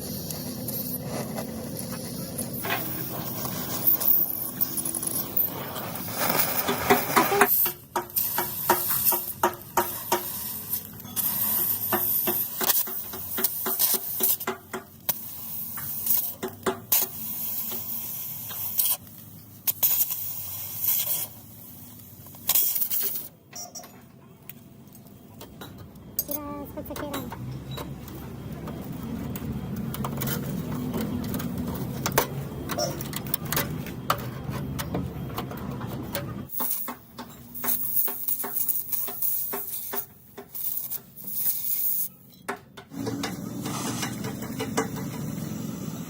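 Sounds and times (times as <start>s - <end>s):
hissing bursts: 6.0s - 19.0s.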